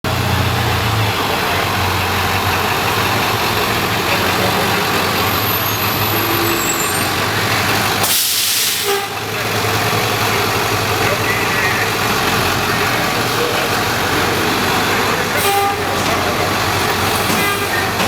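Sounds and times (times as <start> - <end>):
bus engine idling: 0.0 - 18.0
air brakes hissing: 8.0 - 9.3, 15.3 - 18.0.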